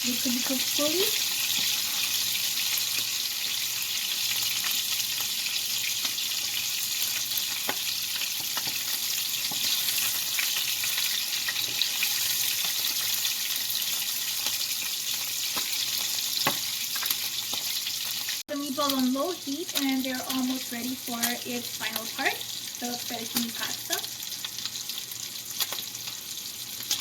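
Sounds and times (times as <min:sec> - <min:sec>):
meatballs sizzling in oil: 0:00.0 - 0:27.0
oil popping and crackling: 0:00.2 - 0:27.0.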